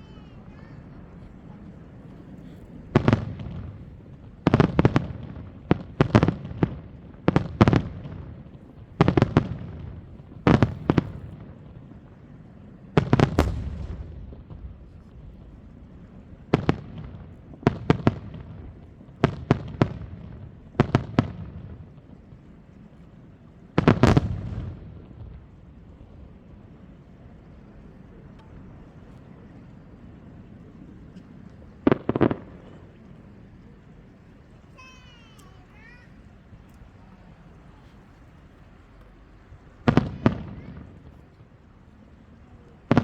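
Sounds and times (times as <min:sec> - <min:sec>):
fireworks bursting with echo: 0:00.0 - 0:43.0.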